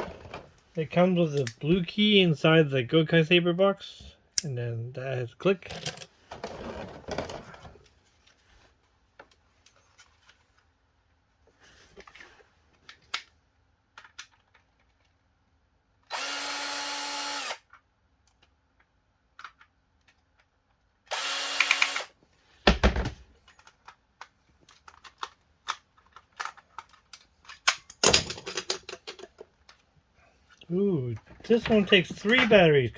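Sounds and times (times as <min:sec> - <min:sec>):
small electric screwdriver running: 0:16.1 - 0:17.6, 0:21.1 - 0:22.1.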